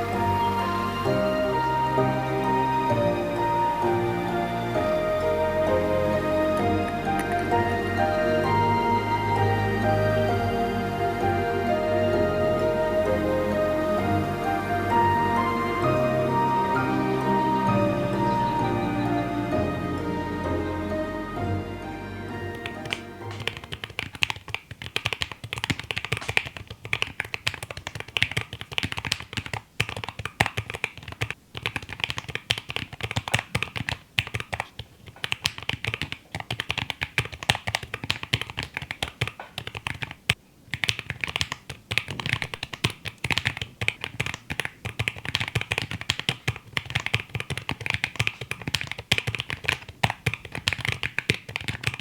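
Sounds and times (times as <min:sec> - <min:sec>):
mechanical keyboard typing: 0:22.4 - 0:52.0.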